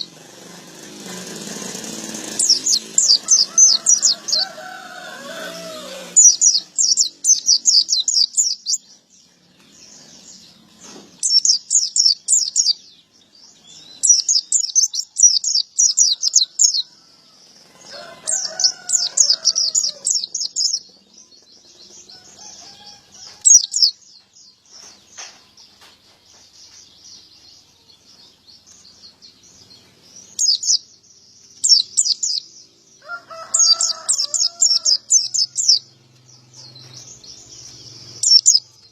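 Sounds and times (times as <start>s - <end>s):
bird twittering rapidly: 0.0s - 8.9s, 11.1s - 12.9s, 13.6s - 16.9s, 17.6s - 24.0s, 29.6s - 35.9s, 36.9s - 38.9s
lower bird call: 1.3s - 8.8s, 13.7s - 24.0s, 36.6s - 38.9s.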